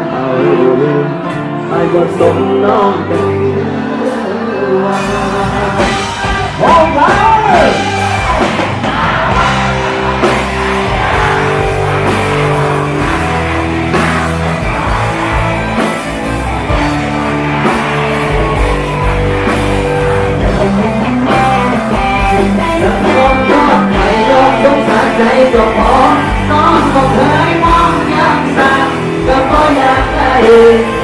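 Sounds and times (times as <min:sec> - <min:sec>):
person singing: 0:00.0 - 0:15.4, 0:19.8 - 0:31.0
band playing: 0:00.0 - 0:31.0.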